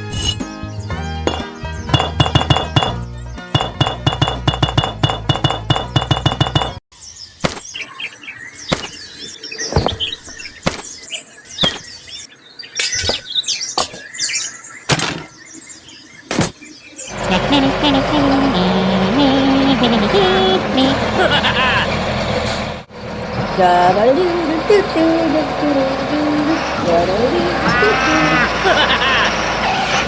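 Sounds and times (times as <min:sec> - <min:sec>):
sharp clinks and knocks: 0:01.3 - 0:03.0
music with fast beat: 0:01.3 - 0:06.8.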